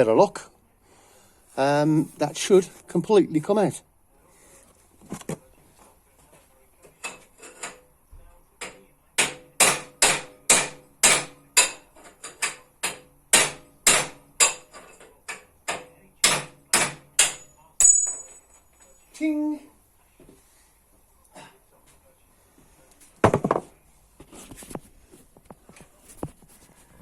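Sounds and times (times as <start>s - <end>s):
hammer striking steel pipe: 8.6s - 11.9s, 12.8s - 14.8s.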